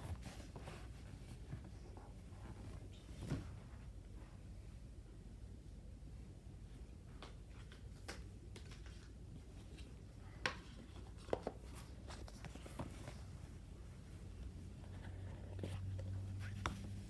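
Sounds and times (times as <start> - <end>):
clicks and taps of packaging handled: 7.2 - 9.1, 9.7 - 11.8.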